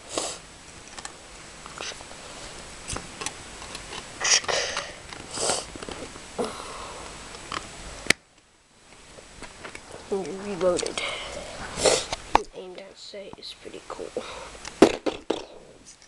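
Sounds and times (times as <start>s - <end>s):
short bursts of hissing: 4.2s - 5.7s, 11.4s - 12.2s.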